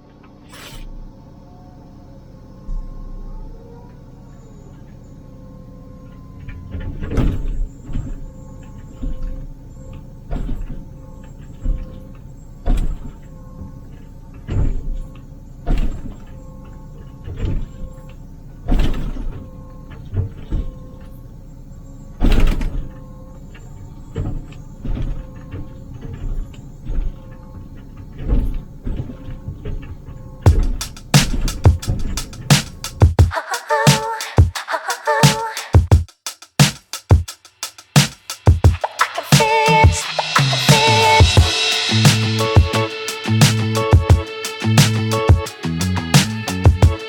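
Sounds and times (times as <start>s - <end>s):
short loud noise bursts: 30.5s - 47.0s
excavator diesel engine running: 38.8s - 47.0s.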